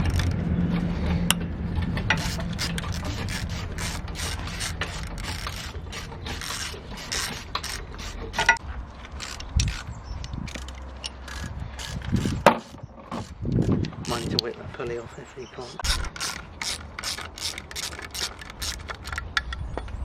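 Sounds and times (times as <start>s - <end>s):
ratchet wrench clicking: 0.0s - 0.4s, 2.1s - 14.5s, 15.8s - 19.2s.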